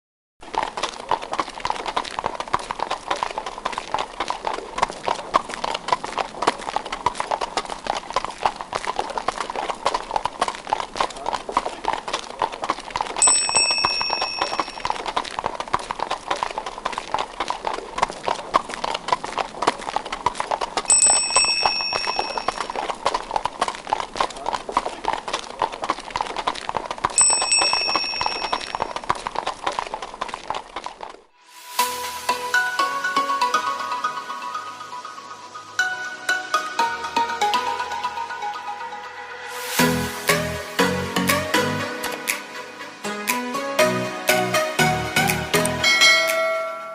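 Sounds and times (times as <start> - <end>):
horse hooves clip-clopping: 0.4 - 31.7
carriage bell ringing: 13.2 - 14.8, 20.9 - 22.7, 27.2 - 28.8, 45.8 - 46.9.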